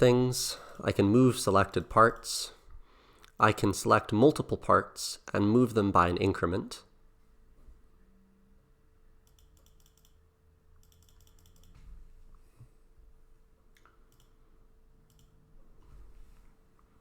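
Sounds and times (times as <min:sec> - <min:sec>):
faint steady hum: 0:00.0 - 0:17.0
computer keyboard clicking: 0:09.2 - 0:10.2, 0:10.8 - 0:11.8, 0:13.8 - 0:14.4, 0:15.1 - 0:15.3.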